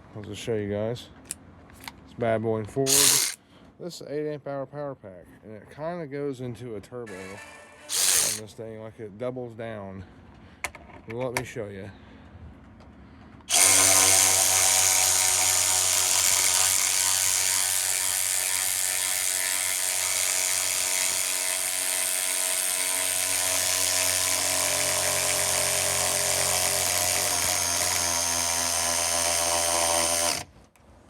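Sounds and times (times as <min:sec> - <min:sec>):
cordless ratchet motor running: 0:02.9 - 0:03.4, 0:07.1 - 0:08.4, 0:13.5 - 0:30.5.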